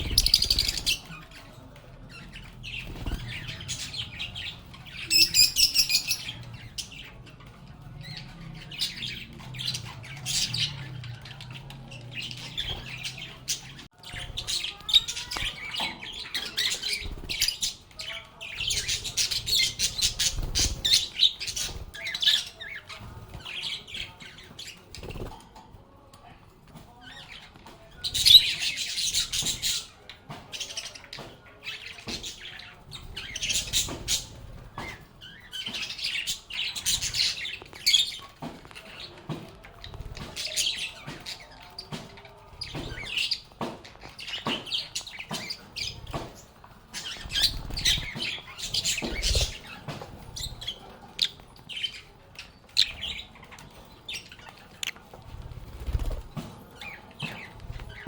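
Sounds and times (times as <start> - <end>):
lovebirds chirping: 0.0 - 25.3, 31.6 - 58.0.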